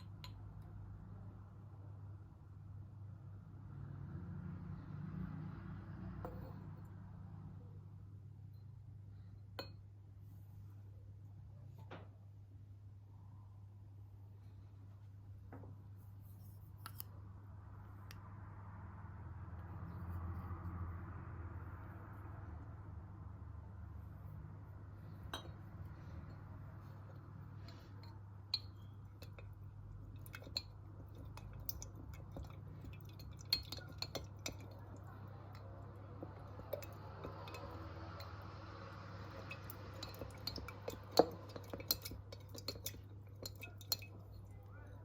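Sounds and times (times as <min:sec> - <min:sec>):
utensils tapping dishes and glass: 0:30.2 - 0:44.5.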